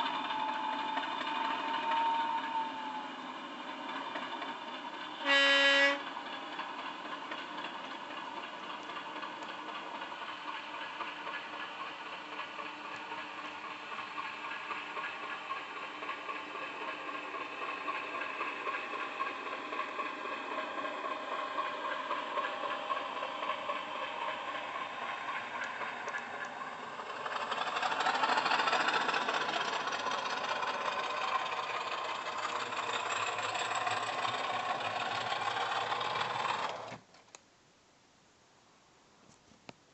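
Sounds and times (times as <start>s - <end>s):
model diesel engine sound: 0.0s - 37.1s.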